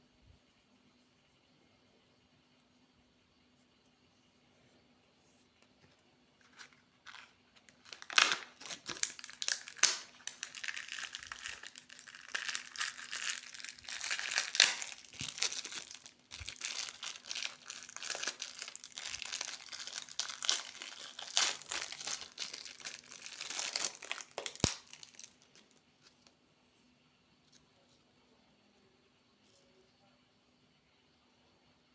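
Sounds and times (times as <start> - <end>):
plastic wrapper crinkling: 6.4 - 25.8.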